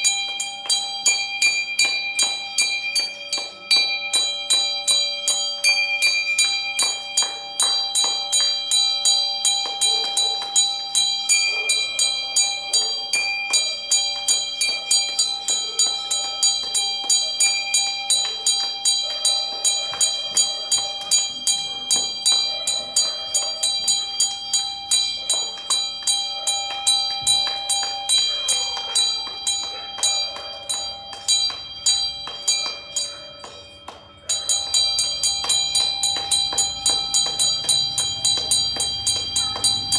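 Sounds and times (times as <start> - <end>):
metal bell struck rapidly: 0.0 - 39.9.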